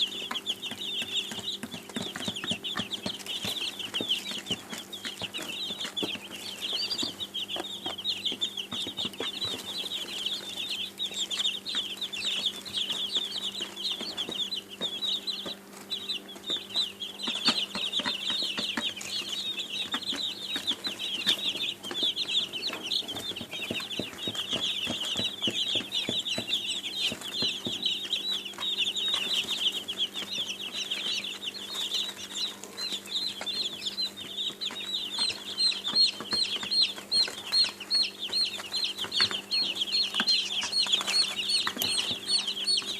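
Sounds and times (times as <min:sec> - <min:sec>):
baby chicks peeping: 0:00.0 - 0:42.9.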